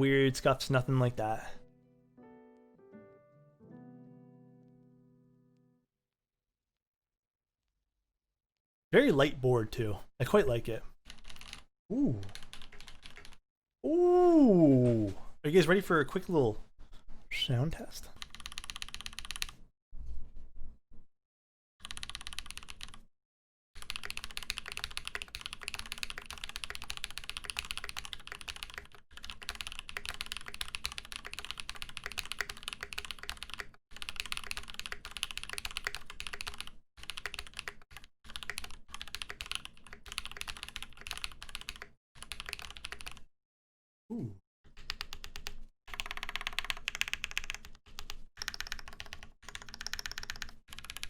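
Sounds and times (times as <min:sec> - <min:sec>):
mechanical keyboard key clacks: 0:45.3 - 0:51.0.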